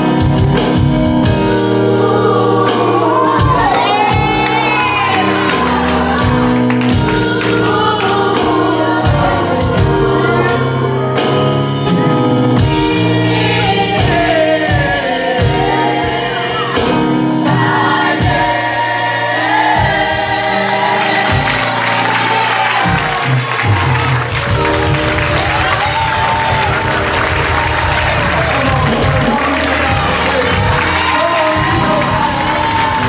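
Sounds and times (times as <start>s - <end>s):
held keyboard chords: 0.0s - 33.0s
voices singing gospel: 1.1s - 33.0s
steady drum hits: 11.9s - 33.0s.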